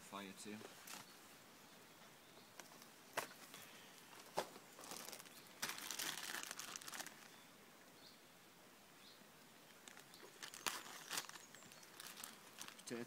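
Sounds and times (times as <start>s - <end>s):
tin foil crinkling: 4.8s - 7.3s, 9.8s - 13.0s.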